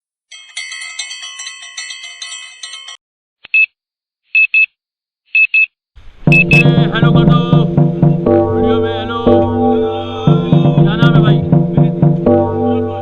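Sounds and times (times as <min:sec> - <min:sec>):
short high beeps: 0:06.3 - 0:06.8.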